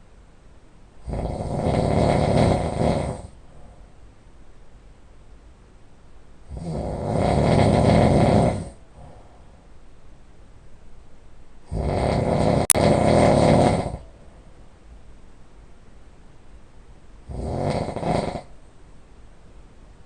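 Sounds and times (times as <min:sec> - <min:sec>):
person snoring loudly: 0:01.0 - 0:03.4, 0:06.5 - 0:09.2, 0:11.7 - 0:14.1, 0:17.3 - 0:18.5
quiet breath: 0:02.6 - 0:04.1, 0:08.0 - 0:09.9.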